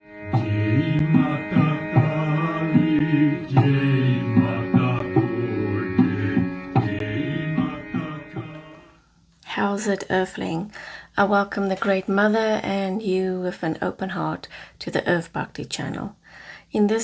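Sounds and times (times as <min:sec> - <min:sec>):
drone of held tones: 0:00.0 - 0:09.0.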